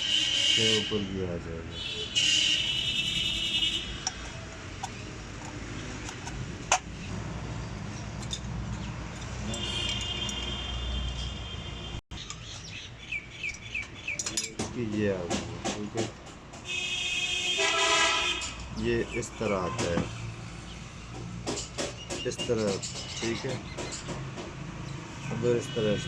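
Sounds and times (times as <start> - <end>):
birds chirping: 6.9 - 15.4, 18.7 - 21.2, 21.8 - 25.8
metallic clicks: 13.4 - 14.7.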